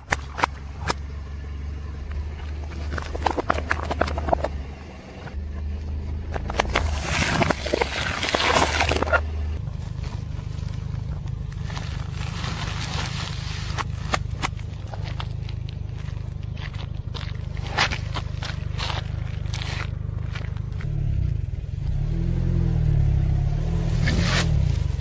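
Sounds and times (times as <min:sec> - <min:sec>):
car engine idling: 0:00.0 - 0:23.9
tyre crushing objects: 0:02.4 - 0:04.6, 0:06.3 - 0:21.0
faint rustle: 0:09.6 - 0:20.8.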